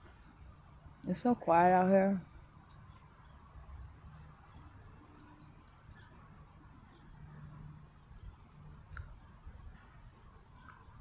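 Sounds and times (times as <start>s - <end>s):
bird chirps: 2.7s - 9.5s.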